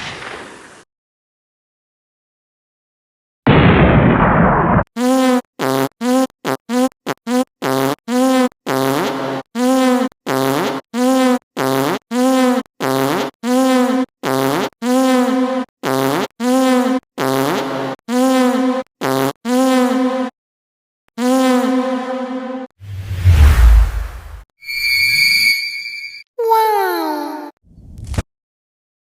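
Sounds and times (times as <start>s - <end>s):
fart-like buzzing sound effect: 5.0s - 20.4s, 21.2s - 22.2s.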